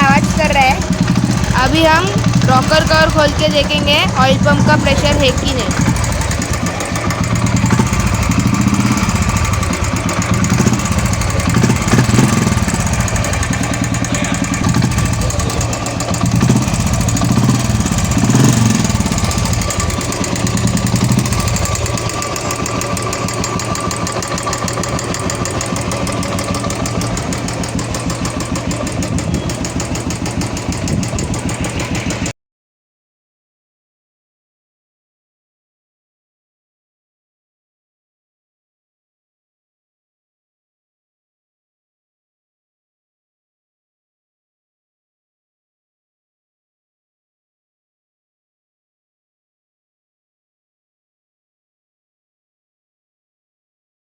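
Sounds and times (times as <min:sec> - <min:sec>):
motorcycle engine idling: 0:00.0 - 0:32.3
rapid valve tapping: 0:00.1 - 0:32.3.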